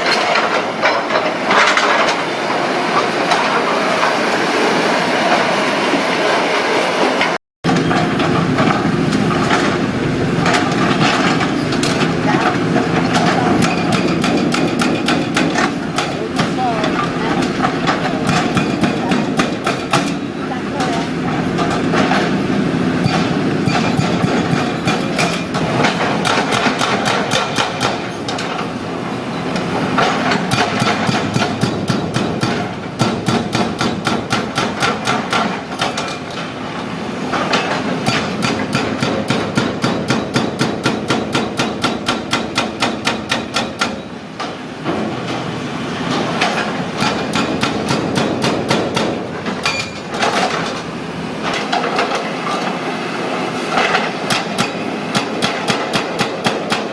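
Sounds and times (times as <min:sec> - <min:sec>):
excavator diesel engine running: 0:00.0 - 0:40.8, 0:41.4 - 0:56.9
hydraulic breaker hammering concrete: 0:07.6 - 0:22.4, 0:23.0 - 0:28.7, 0:29.9 - 0:36.5, 0:37.3 - 0:45.2, 0:46.1 - 0:52.7, 0:53.7 - 0:56.9.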